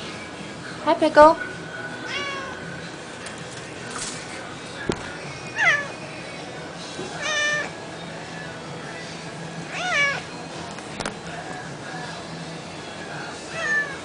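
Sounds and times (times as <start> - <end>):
cat meowing: 2.1 - 2.6, 5.6 - 6.0, 7.2 - 7.7, 9.7 - 10.3, 13.5 - 14.0.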